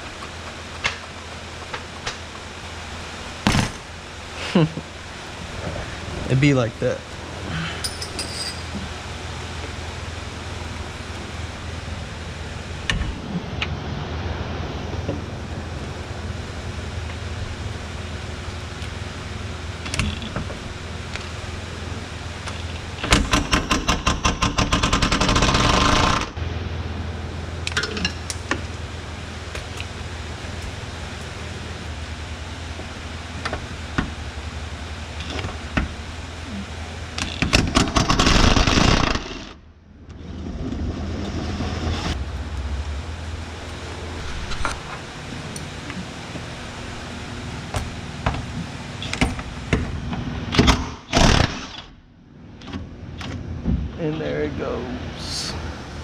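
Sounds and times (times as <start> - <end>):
steady low hum: 0.0 - 56.0
metal tool clinks: 7.8 - 8.7.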